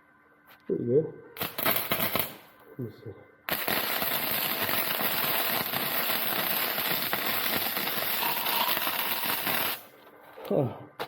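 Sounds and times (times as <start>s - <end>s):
welding arc crackling: 1.4s - 2.6s, 3.5s - 9.9s.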